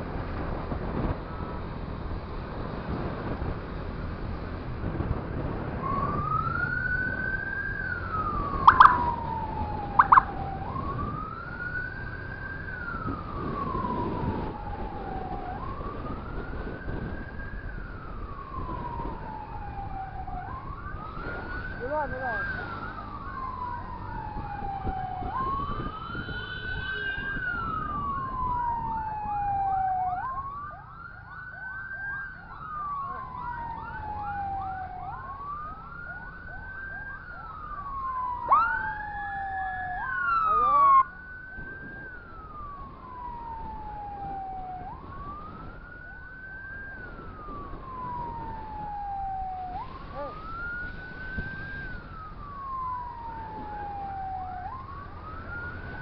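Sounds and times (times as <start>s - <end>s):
road noise: 0.0s - 56.0s
slow wailing siren: 0.0s - 56.0s
loud siren sweep: 4.3s - 56.0s
fast sweeping siren: 5.7s - 56.0s.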